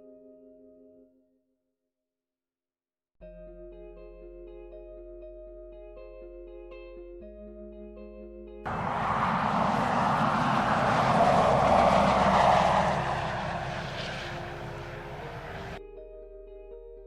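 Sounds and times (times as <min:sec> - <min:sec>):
vehicle driving past: 0:08.7 - 0:15.8.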